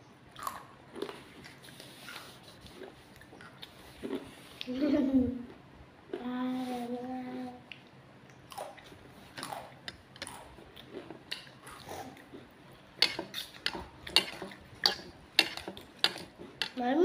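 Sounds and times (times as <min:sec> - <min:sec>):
chewing and mouth sounds: 0:07.7 - 0:12.6.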